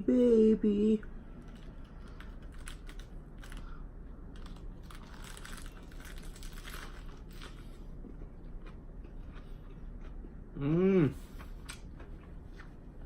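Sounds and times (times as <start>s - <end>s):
lettuce crunching while chewing: 1.4s - 10.3s.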